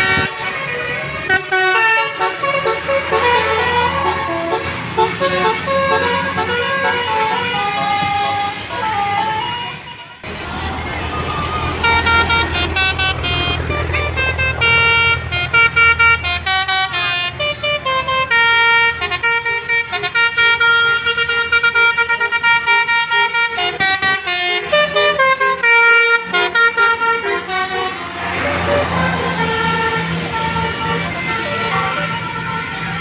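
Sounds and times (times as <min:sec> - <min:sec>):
musical bus horn tune: 0:00.0 - 0:10.4, 0:11.3 - 0:33.0
deep engine rumble: 0:00.0 - 0:21.3.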